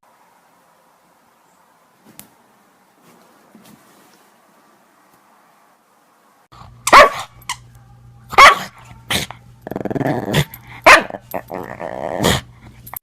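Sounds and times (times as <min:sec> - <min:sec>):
dog barking: 0:06.9 - 0:07.4, 0:08.3 - 0:09.3, 0:10.4 - 0:11.4
dog growling: 0:09.0 - 0:12.7.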